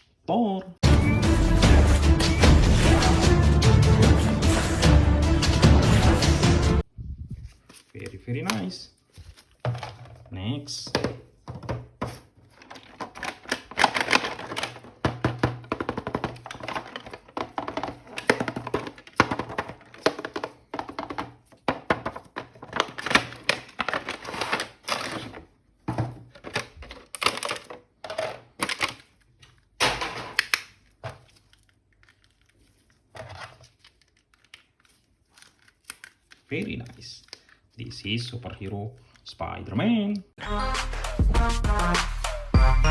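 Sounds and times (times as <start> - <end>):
plastic toy packaging crinkling: 7.4 - 10.4, 12.0 - 39.4.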